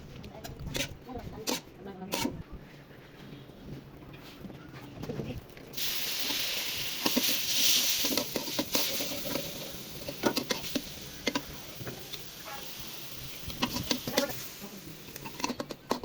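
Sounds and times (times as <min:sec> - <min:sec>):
food sizzling in hot oil: 0:05.7 - 0:16.0.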